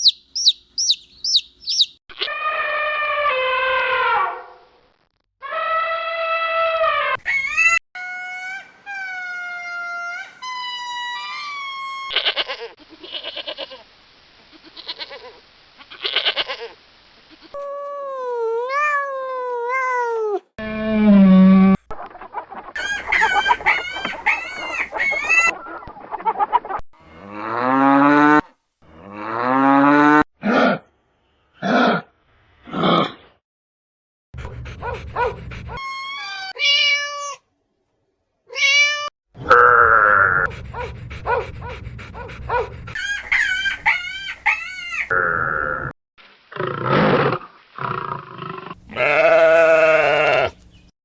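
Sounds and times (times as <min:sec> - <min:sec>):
farm animal calls: 0:00.0 - 0:01.9, 0:48.8 - 0:50.9
chicken calls: 0:00.0 - 0:02.0, 0:22.2 - 0:26.6.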